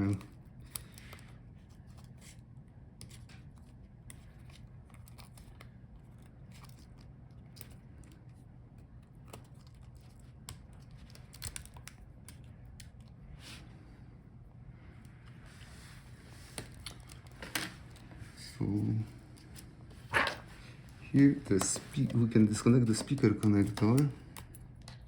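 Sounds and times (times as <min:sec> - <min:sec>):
low steady hum: 0:00.0 - 0:25.0
small laptop parts clicking: 0:02.9 - 0:13.2, 0:21.6 - 0:25.0.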